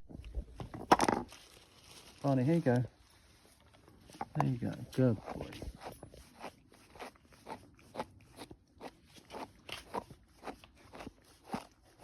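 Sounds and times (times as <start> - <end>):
dog crunching a treat: 4.4 - 12.0.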